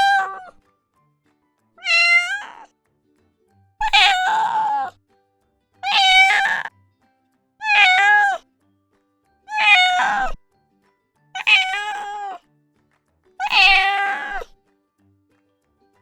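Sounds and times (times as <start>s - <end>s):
cat meowing: 0.0s - 0.6s, 1.8s - 2.7s, 3.8s - 5.0s, 5.8s - 6.7s, 7.6s - 8.4s, 9.5s - 10.4s, 11.4s - 12.4s, 13.4s - 14.6s.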